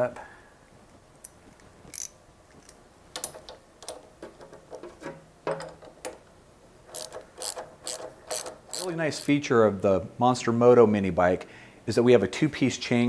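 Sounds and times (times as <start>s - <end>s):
ratchet wrench clicking: 1.9s - 2.2s, 6.9s - 9.3s.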